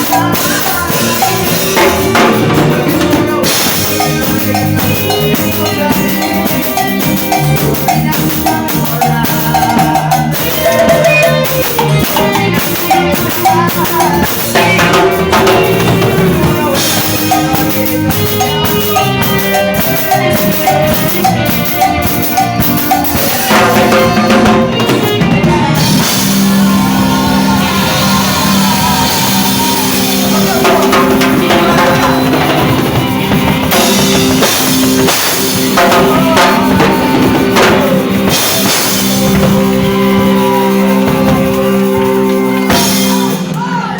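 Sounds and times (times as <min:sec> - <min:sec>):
live cumbia band playing: 0:00.0 - 0:43.9
rapid drum rolls: 0:23.5 - 0:41.9.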